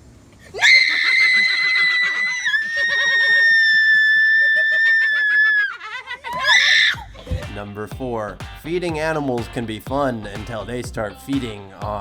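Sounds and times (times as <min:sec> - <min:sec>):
person screaming: 0:00.5 - 0:07.4.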